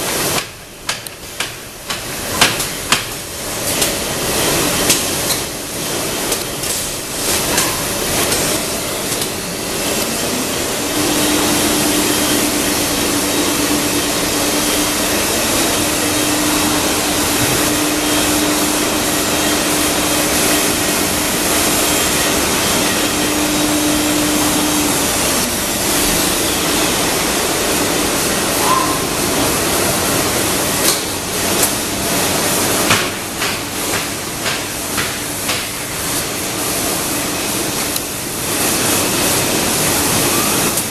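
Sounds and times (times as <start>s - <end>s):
woodworking machine rushing hiss: 0.0s - 40.9s
spindle tone: 28.6s - 29.6s.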